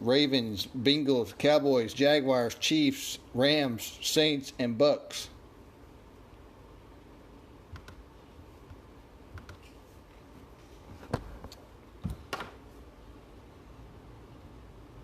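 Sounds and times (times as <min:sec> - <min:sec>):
faint clicks and taps: 0:08.6 - 0:12.6.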